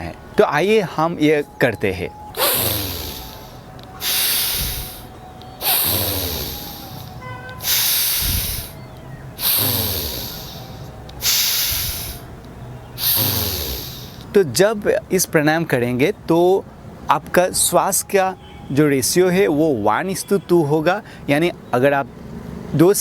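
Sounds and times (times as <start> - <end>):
person breathing deeply: 2.4 - 12.4, 13.0 - 14.3.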